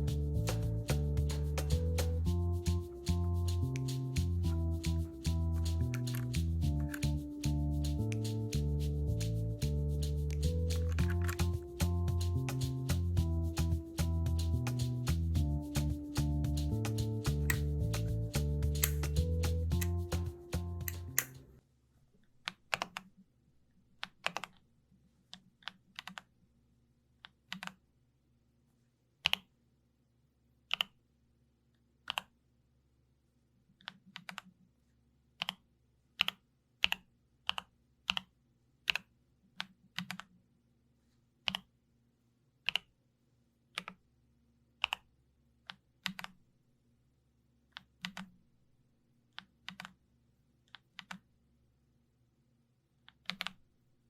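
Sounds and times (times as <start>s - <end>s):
mechanical keyboard keystrokes: 5.7s - 7.2s, 10.3s - 12.6s, 16.1s - 21.4s.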